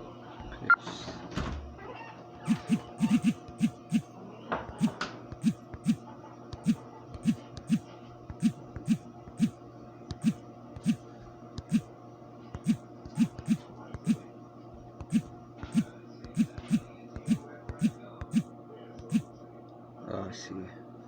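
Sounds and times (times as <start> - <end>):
faint steady hum: 2.4 - 4.1
keystrokes clicking: 2.5 - 4.0, 4.7 - 6.0, 6.6 - 11.0, 11.6 - 11.9, 12.6 - 14.2, 15.0 - 19.2.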